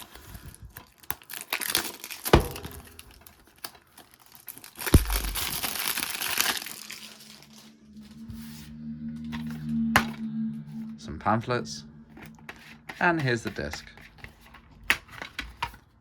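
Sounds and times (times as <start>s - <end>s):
plastic wrap tearing and crinkling: 0.0s - 7.7s.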